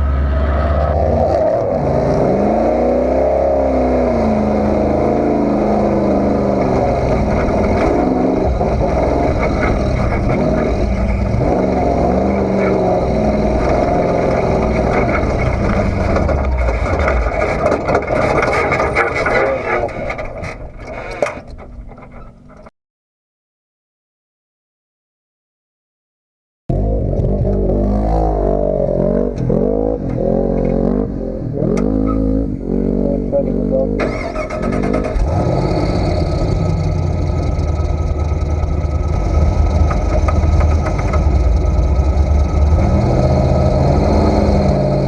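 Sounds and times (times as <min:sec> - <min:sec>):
truck engine revving: 0:00.0 - 0:21.2, 0:26.7 - 0:45.0
constant rushing noise: 0:06.3 - 0:22.6, 0:36.6 - 0:45.0.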